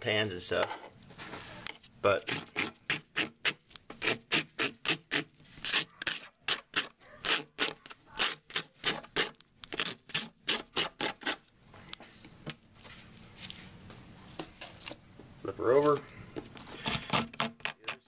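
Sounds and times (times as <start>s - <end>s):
plastic scraper scraping screen: 2.2s - 11.4s, 16.6s - 18.0s.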